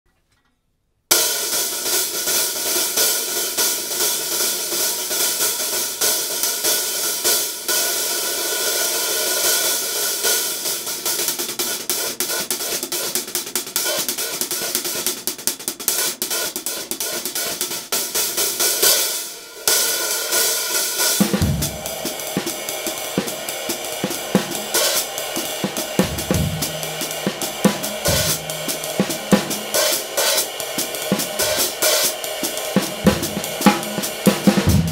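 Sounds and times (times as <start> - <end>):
hi-hat cymbal played with sticks: 1.1 - 34.9
kick drum and snare hits: 21.2 - 34.9.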